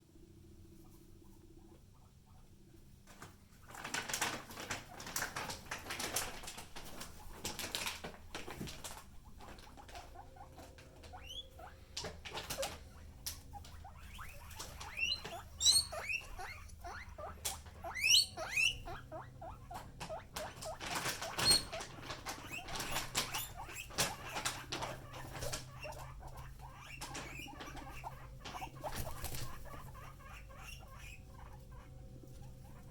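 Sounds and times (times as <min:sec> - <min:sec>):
guinea pigs wheeking: 0:00.0 - 0:32.9.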